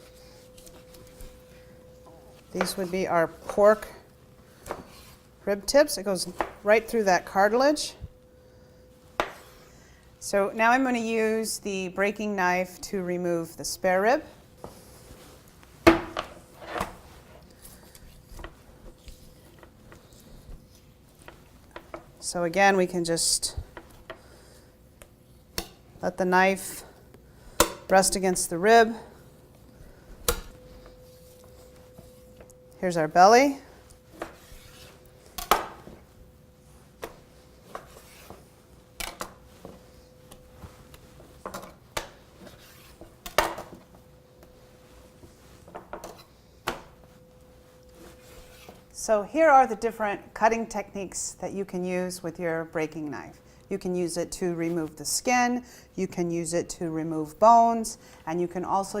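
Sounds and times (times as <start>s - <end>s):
faint steady hum: 0.0s - 59.0s
knife scraping along rib bones: 48.1s - 48.8s.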